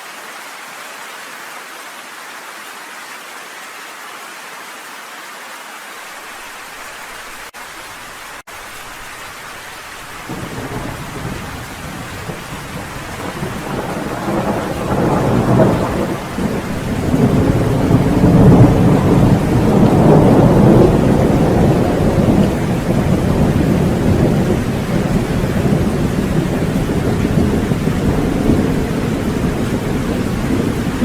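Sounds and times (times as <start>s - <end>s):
steady rain: 0.0s - 31.0s
thunder rumbling: 10.1s - 31.0s.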